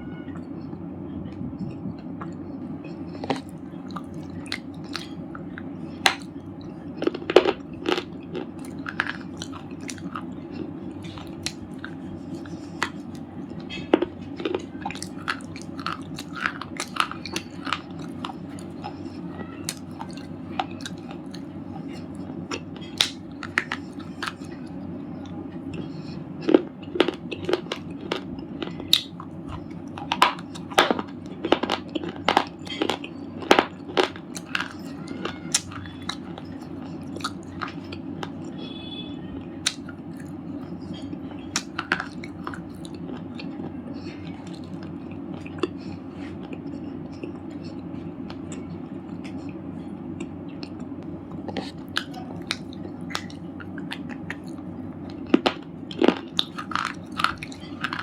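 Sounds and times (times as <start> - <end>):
chewing crunchy chips: 0.1 - 58.0.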